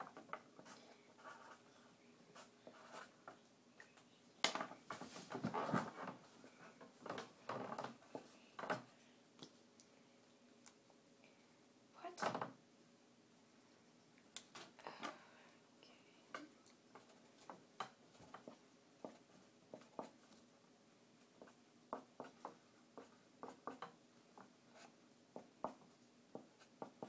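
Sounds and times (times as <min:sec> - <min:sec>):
marker pen scratching on paper: 0:00.6 - 0:01.6, 0:02.4 - 0:03.2, 0:21.4 - 0:27.0.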